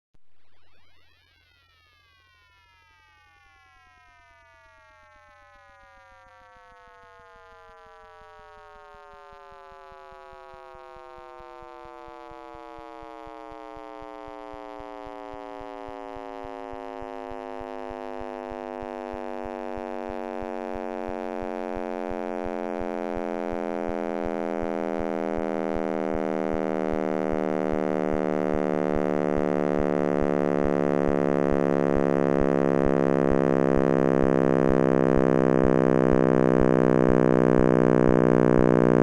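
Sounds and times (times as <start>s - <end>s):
synthesized tone sliding down: 15.3s - 39.0s.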